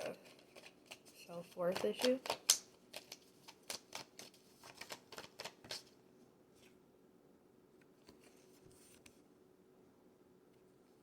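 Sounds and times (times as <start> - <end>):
cards being shuffled: 0.1 - 5.9.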